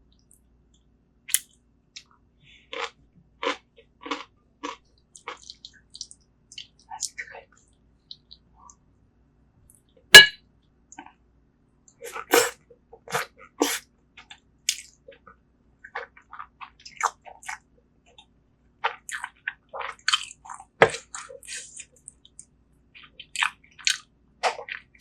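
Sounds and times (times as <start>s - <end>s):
wet chewing and squishing: 2.8s - 7.3s, 12.1s - 25.0s
sharp clink: 10.2s - 10.4s.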